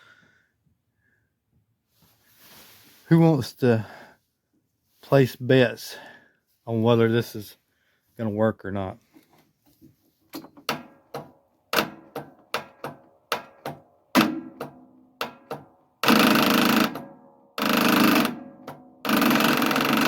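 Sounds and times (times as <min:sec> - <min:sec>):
starter clicking: 0:10.3 - 0:20.0
starter motor cranking engine: 0:16.0 - 0:20.0.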